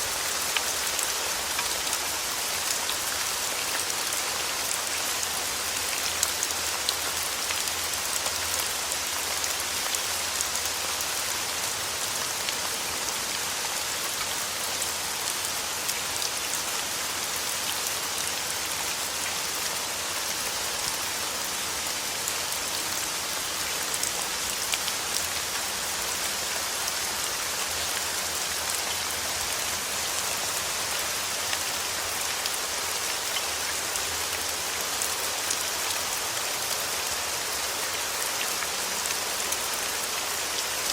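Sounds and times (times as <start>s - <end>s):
steady rain hiss: 0.0s - 40.9s.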